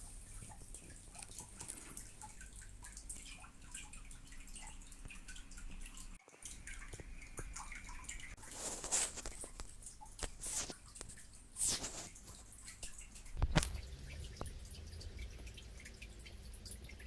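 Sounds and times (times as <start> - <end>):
packaging rustling: 8.5 - 10.7
low steady hum: 12.4 - 17.0.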